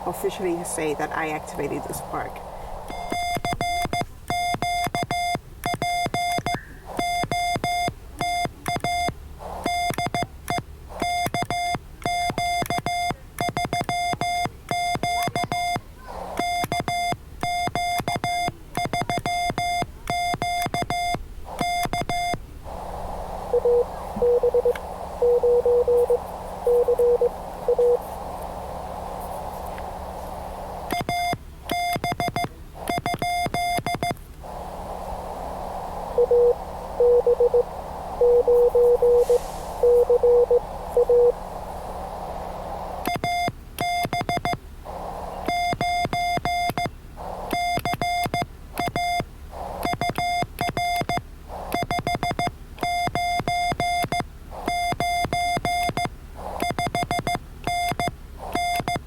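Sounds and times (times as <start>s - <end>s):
radio receiver static: 0.0s - 4.8s, 6.5s - 10.2s, 15.0s - 52.4s, 54.5s - 57.3s, 57.9s - 59.0s
lower-pitched morse code: 0.1s - 59.0s
morse code beeps: 0.2s - 15.8s, 16.4s - 44.6s, 45.2s - 59.0s.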